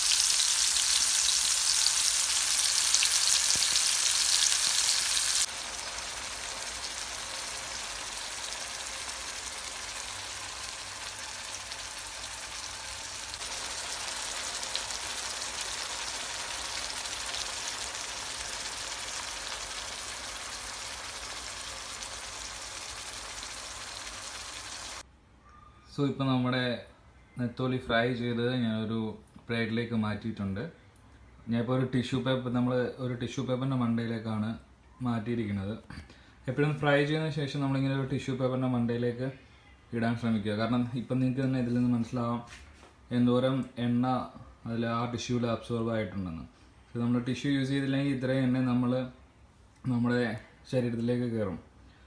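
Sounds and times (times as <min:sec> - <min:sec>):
fish sizzling in hot oil: 0:00.0 - 0:25.0.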